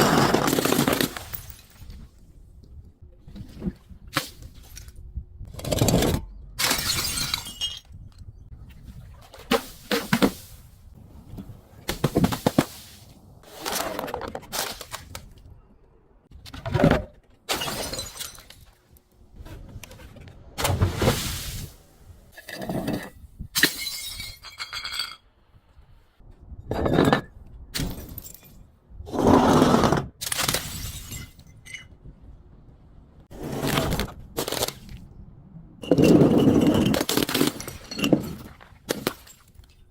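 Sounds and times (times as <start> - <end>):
glass bottles smashing: 6.6 - 7.9, 17.5 - 18.7, 23.6 - 25.2, 30.3 - 31.9.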